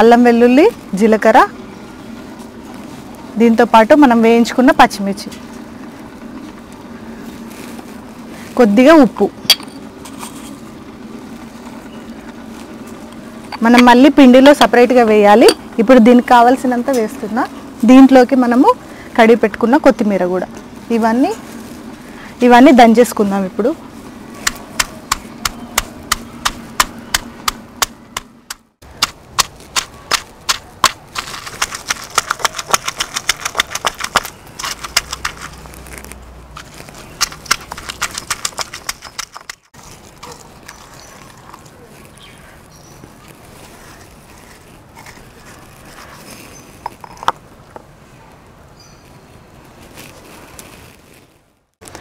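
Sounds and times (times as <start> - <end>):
pestle pounding in a mortar: 24.4 - 35.5, 37.2 - 39.6.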